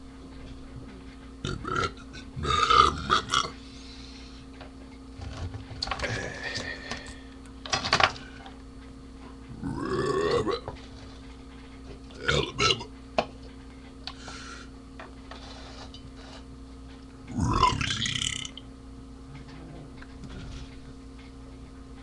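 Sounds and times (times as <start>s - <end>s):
low electrical hum: 0.0s - 22.0s
man burping: 1.4s - 3.6s, 9.6s - 10.7s, 12.2s - 12.9s, 17.3s - 18.6s.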